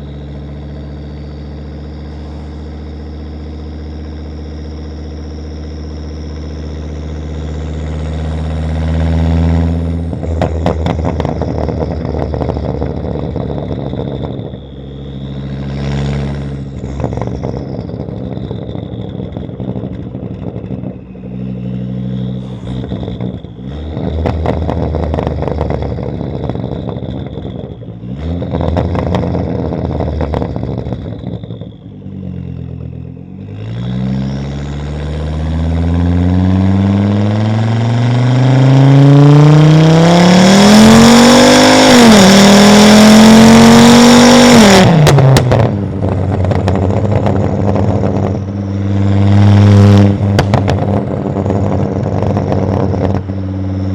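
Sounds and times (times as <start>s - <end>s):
car engine revving: 0.0s - 53.9s
exhaust pops: 7.7s - 14.8s, 15.8s - 33.8s, 44.5s - 53.9s.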